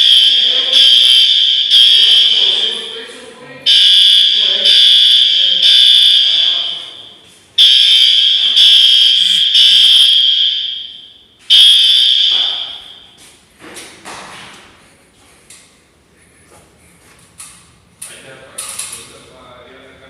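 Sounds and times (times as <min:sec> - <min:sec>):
fire alarm horn blasts: 0:00.0 - 0:13.2.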